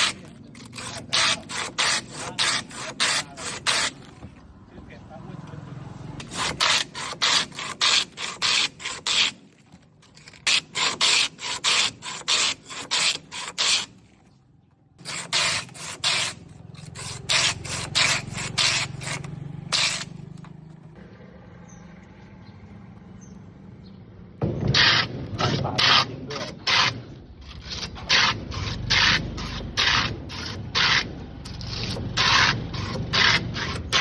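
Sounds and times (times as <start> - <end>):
ice being shaved by hand: 0.0 - 4.3, 6.2 - 14.1, 15.0 - 20.1, 24.7 - 34.0.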